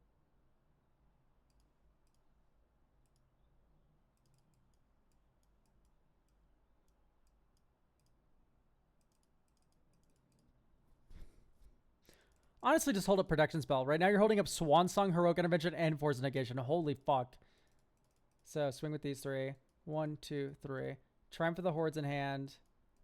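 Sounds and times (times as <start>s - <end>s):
computer mouse clicks: 1.5s - 2.3s, 3.0s - 3.3s, 4.1s - 8.3s, 9.0s - 10.6s, 17.6s - 18.5s.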